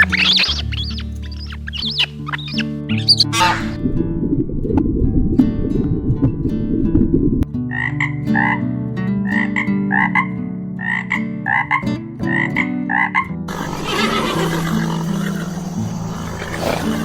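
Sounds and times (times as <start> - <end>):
frog croaking: 7.7 - 8.7, 9.3 - 17.0
rough noisy sound: 13.5 - 17.0.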